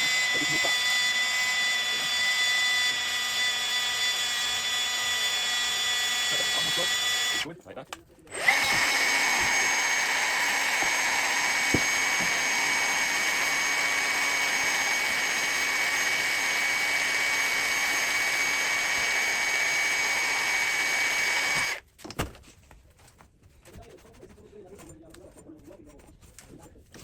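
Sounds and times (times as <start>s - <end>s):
pipe threading machine whine: 0.0s - 7.5s, 8.3s - 21.8s.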